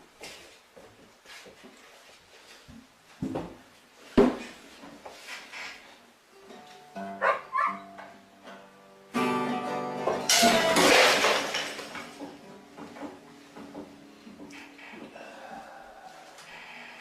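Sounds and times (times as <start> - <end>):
acoustic guitar music: 6.3 - 15.1.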